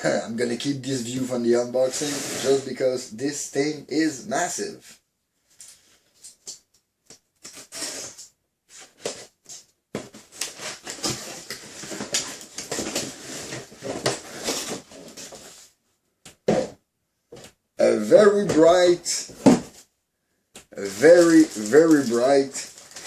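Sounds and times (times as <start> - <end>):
cardboard rustling and crinkling: 7.4 - 15.8, 18.1 - 19.8, 20.8 - 23.0.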